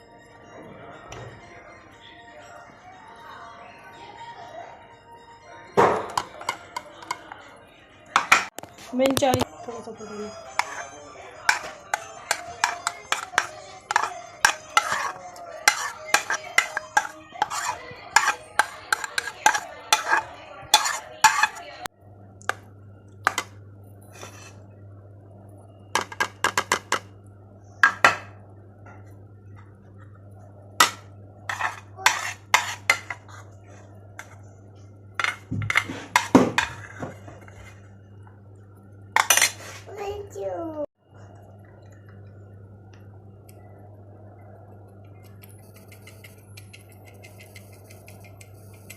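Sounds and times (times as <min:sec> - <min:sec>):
utensils clinking against dishes: 0:05.9 - 0:07.4, 0:08.2 - 0:09.4, 0:10.4 - 0:21.9, 0:30.8 - 0:33.5, 0:35.2 - 0:37.5, 0:39.2 - 0:39.7
steady low hum: 0:09.4 - 0:48.9.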